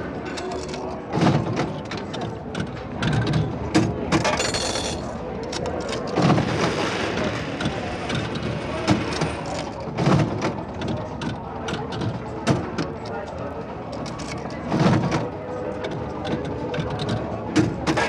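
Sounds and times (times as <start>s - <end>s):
coins clattering into metal tray: 4.2s - 5.2s.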